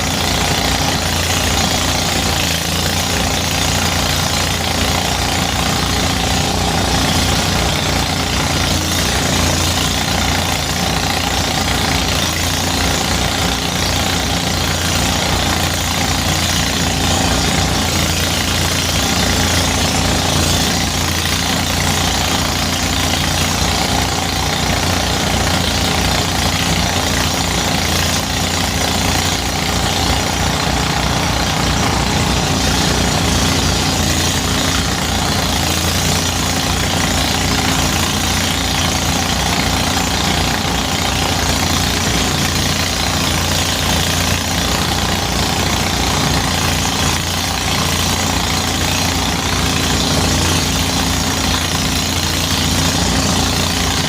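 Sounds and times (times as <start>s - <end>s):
threshing machine engine running: 0.0s - 54.0s.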